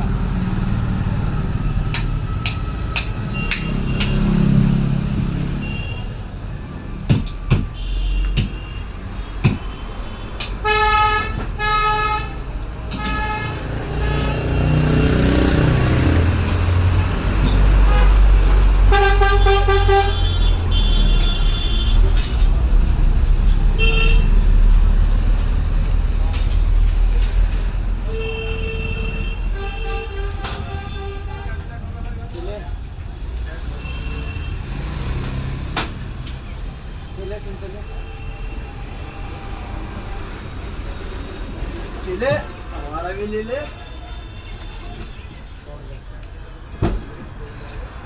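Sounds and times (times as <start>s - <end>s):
road traffic rumble: 0.0s - 48.0s
vehicle horns honking: 10.1s - 15.0s, 18.9s - 22.2s, 23.8s - 24.4s, 28.1s - 31.6s.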